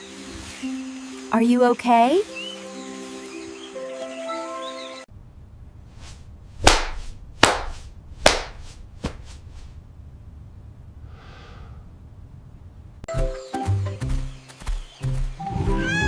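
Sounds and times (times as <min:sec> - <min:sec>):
music: 0:00.0 - 0:05.1, 0:13.1 - 0:16.0
low rumble: 0:05.1 - 0:13.1
sharp cracks: 0:06.6 - 0:09.4.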